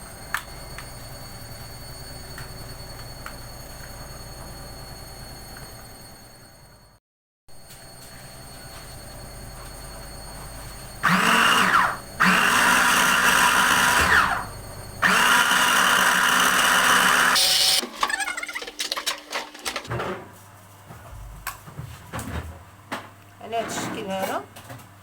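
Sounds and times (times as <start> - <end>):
food processor motor running: 11.0 - 18.9.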